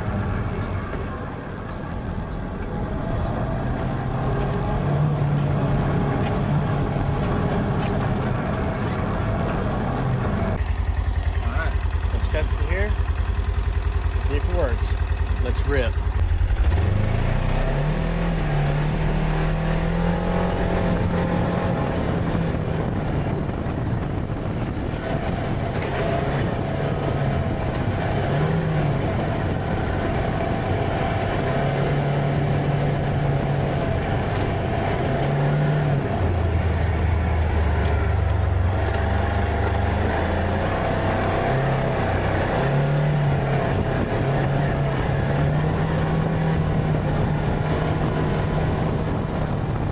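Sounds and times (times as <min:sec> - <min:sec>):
vehicle engine revving: 0:00.0 - 0:49.9
wind and road noise: 0:00.0 - 0:49.9.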